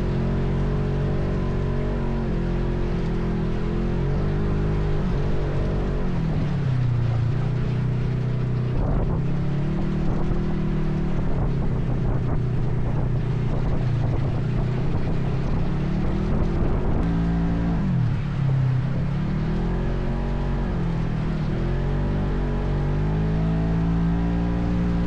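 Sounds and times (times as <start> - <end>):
atv engine revving: 0.0 - 25.0.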